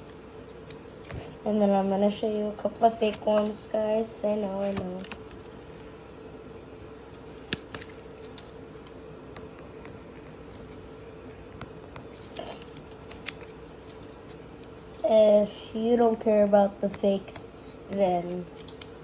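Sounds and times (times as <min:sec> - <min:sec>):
cards rustling: 0:00.0 - 0:05.9, 0:07.2 - 0:15.7, 0:16.8 - 0:19.0
faint steady hum: 0:00.0 - 0:19.0
cards clicking: 0:04.6 - 0:05.8, 0:07.2 - 0:10.8, 0:11.6 - 0:15.0, 0:18.3 - 0:19.0.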